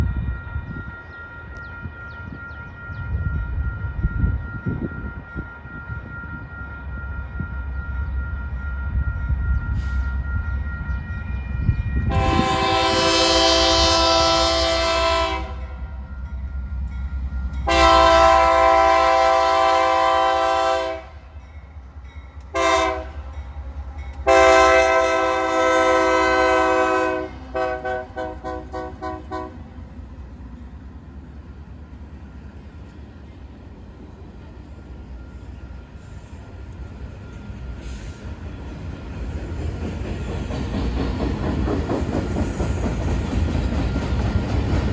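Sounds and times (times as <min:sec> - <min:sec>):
diesel locomotive engine rumble: 0:00.0 - 0:44.9
train air horn: 0:12.0 - 0:15.8, 0:17.6 - 0:21.4, 0:22.5 - 0:23.3, 0:24.2 - 0:29.7.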